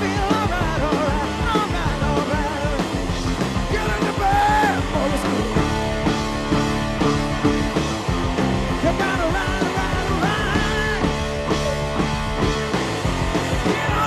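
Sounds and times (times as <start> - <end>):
hard rock band playing: 0.0 - 14.0
gliding high lead guitar: 3.2 - 14.0.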